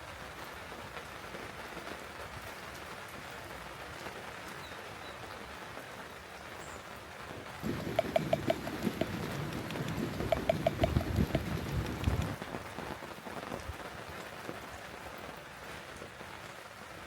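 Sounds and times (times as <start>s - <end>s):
steady rain hiss: 0.0s - 17.0s
faint drops ticking: 7.6s - 12.4s.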